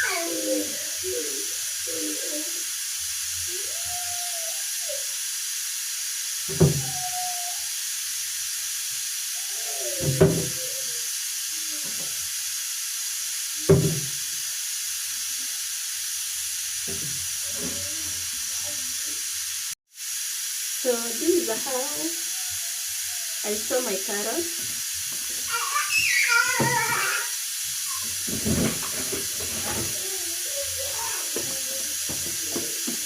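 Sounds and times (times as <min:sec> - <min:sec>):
steady hiss: 0:00.0 - 0:33.0
objects knocking down in kitchen: 0:13.7 - 0:14.2, 0:28.1 - 0:30.0.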